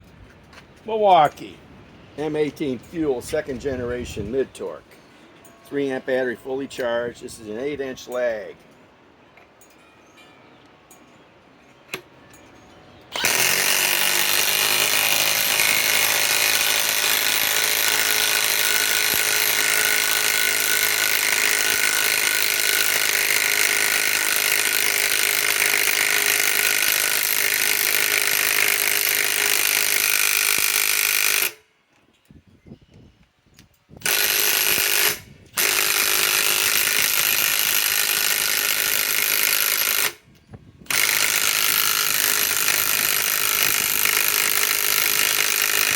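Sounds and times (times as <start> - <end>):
impact wrench hammering: 13.1 - 31.6, 34.0 - 40.2, 40.9 - 45.9.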